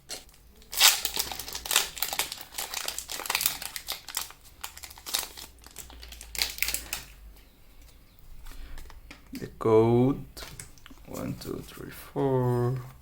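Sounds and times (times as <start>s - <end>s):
foil wrapper crinkling: 0.1s - 7.2s.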